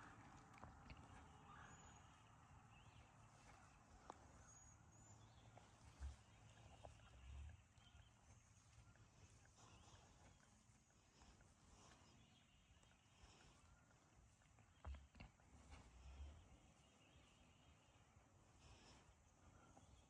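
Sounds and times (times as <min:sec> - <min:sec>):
faint high bird chirps: 0:00.9 - 0:14.0.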